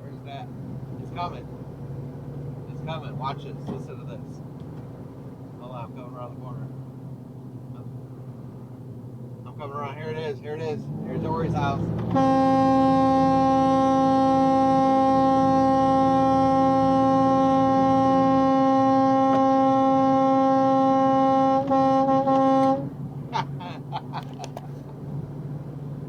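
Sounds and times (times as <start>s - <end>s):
air horn long blast: 12.1s - 23.0s.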